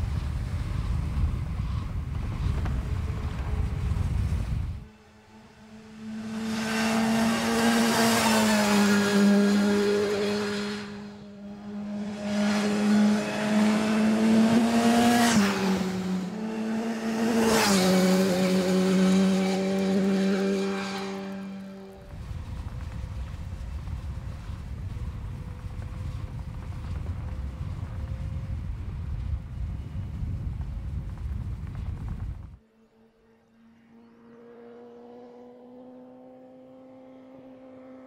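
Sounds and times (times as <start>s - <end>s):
motorcycle engine at high speed: 0.0s - 38.0s.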